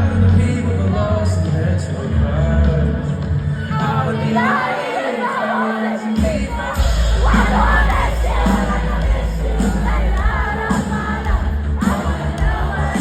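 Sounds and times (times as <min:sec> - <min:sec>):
live pop-rock song: 0:00.0 - 0:13.0
crowd whooping and cheering: 0:03.6 - 0:13.0.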